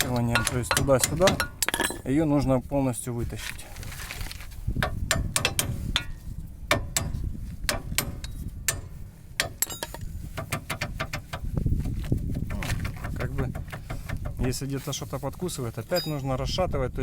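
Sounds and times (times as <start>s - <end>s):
metallic clicks and knocks: 0.0s - 2.1s, 4.8s - 11.5s.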